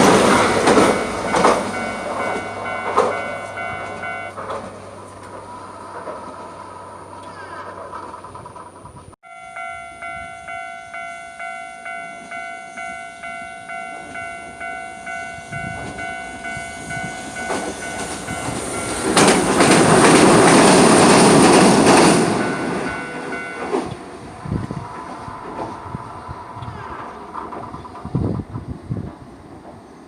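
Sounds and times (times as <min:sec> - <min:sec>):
level crossing warning bell: 0:00.0 - 0:05.7, 0:09.2 - 0:25.5
tram passing: 0:00.0 - 0:30.0.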